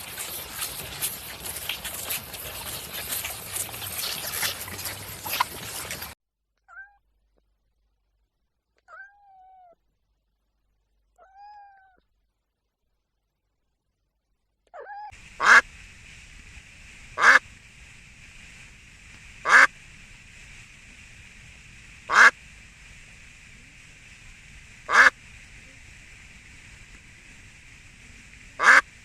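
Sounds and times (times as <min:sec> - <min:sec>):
cat meows: 0:06.7 - 0:07.0, 0:08.8 - 0:09.8, 0:11.2 - 0:12.0
steady background hiss: 0:15.2 - 0:29.0
duck quacking: 0:15.4 - 0:15.6, 0:17.2 - 0:17.4, 0:19.4 - 0:19.7, 0:22.1 - 0:22.3, 0:24.9 - 0:25.2, 0:28.6 - 0:28.9.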